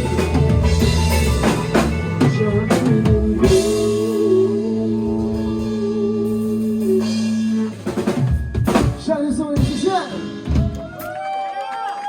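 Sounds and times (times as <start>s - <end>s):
live band sustained chord: 0.0s - 8.6s
drum kit fill with cymbals: 0.0s - 11.3s.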